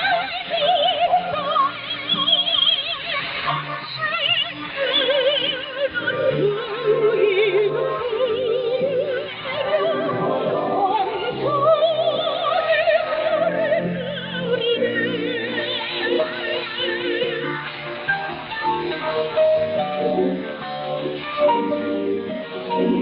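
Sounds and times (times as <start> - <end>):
woman singing operatically: 0.0 - 17.8.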